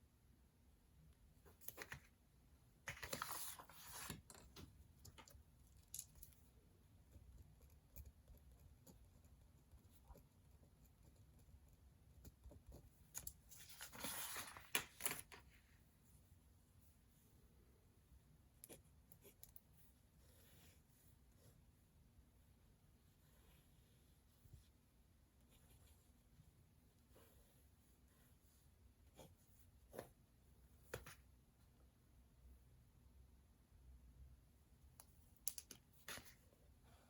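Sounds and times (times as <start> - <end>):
faint low room hum: 0.0 - 37.0.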